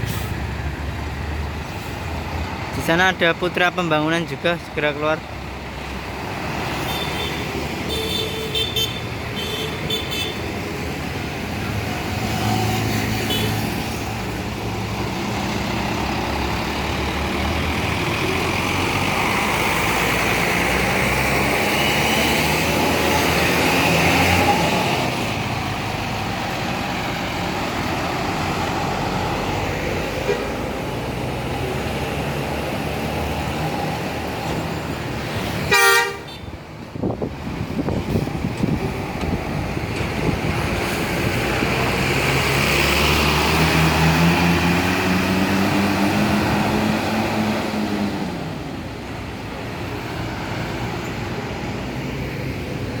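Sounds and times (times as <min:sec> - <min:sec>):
bus engine driving past: 0:00.0 - 0:03.6, 0:04.2 - 0:53.0
horn toots: 0:30.2 - 0:30.6, 0:35.7 - 0:36.5.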